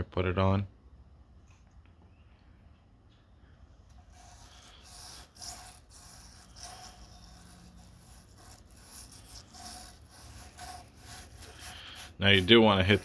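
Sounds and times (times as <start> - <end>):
scratchy brush strokes on wood: 4.0 - 13.0.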